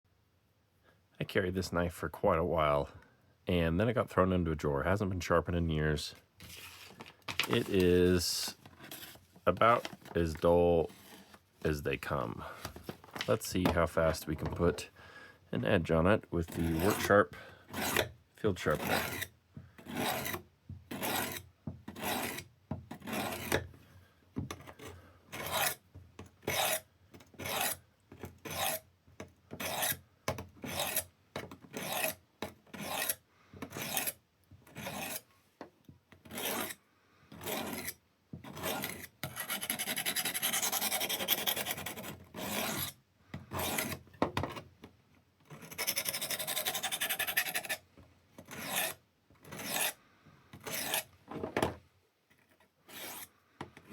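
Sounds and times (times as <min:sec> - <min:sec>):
knife scraping on sharpener: 0:16.4 - 0:23.6, 0:24.6 - 0:25.8, 0:26.5 - 0:27.8, 0:28.4 - 0:28.9, 0:29.6 - 0:30.0, 0:30.6 - 0:31.1, 0:31.7 - 0:35.3, 0:36.3 - 0:36.8, 0:37.4 - 0:44.0, 0:45.5 - 0:47.8, 0:48.4 - 0:50.0, 0:50.6 - 0:51.1, 0:52.9 - 0:53.3.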